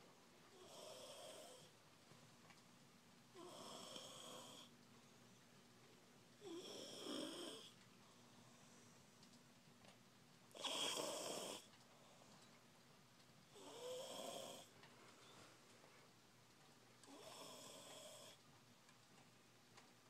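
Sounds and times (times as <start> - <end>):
toddler snoring: 0.5 - 1.7, 3.3 - 4.7, 6.4 - 7.8, 10.5 - 11.7, 13.5 - 14.7, 17.0 - 18.4.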